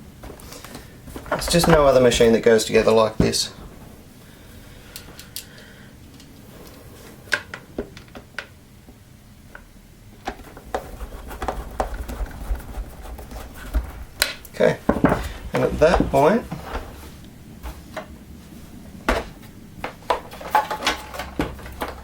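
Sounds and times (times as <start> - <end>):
low handling rumble: 0.0 - 22.0
plastic parts clicking and knocking: 19.1 - 22.0.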